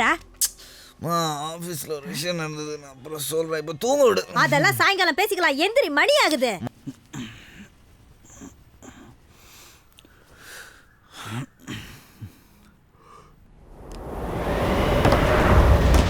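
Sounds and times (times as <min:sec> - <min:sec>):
whooshing noise: 0:13.5 - 0:16.0.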